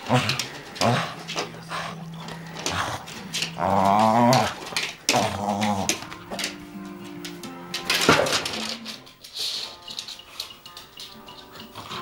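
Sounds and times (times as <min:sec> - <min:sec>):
dog growling and whining: 0:00.0 - 0:06.0
scuffling clicks: 0:02.2 - 0:11.1.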